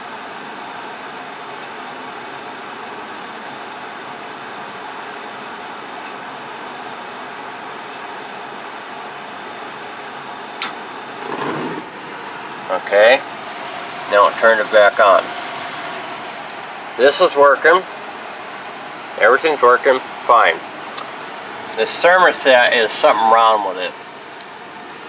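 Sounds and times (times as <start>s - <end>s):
furnace blower fan running: 0.0s - 25.0s
sharp click: 10.6s - 10.8s.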